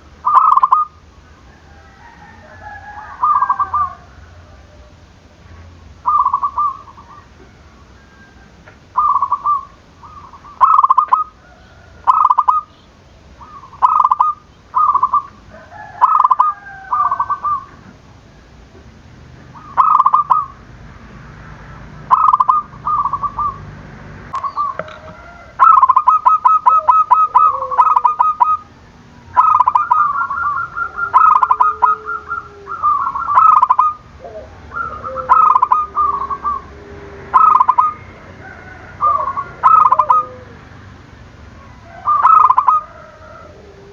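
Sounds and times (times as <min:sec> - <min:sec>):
lower softer dove coo: 0:00.0 - 0:18.5, 0:22.1 - 0:43.9
doves cooing: 0:00.0 - 0:43.9.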